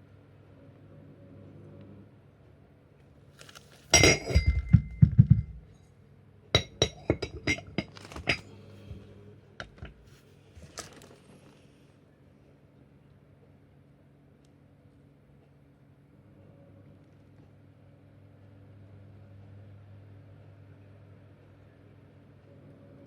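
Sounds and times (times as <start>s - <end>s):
hard objects clinking and knocking: 4.0s - 5.8s, 6.6s - 9.0s, 9.6s - 10.1s.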